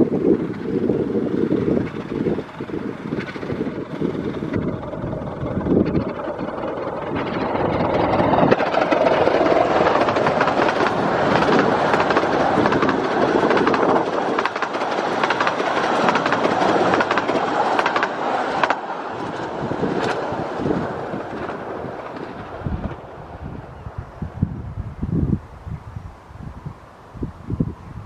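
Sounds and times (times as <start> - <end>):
train wheels clattering over rails: 0.0 - 23.2.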